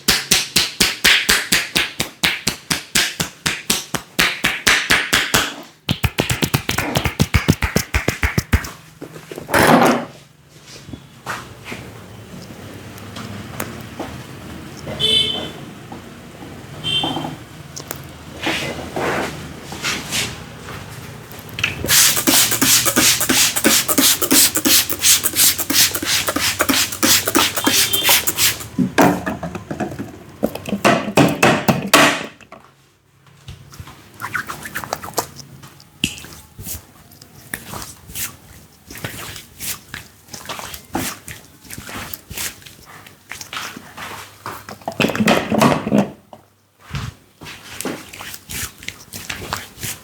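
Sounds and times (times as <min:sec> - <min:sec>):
hands patting and rubbing head: 0:00.0 - 0:08.8, 0:21.9 - 0:28.8, 0:34.2 - 0:35.4
hands slapping and tapping head: 0:00.0 - 0:08.8, 0:21.9 - 0:28.7.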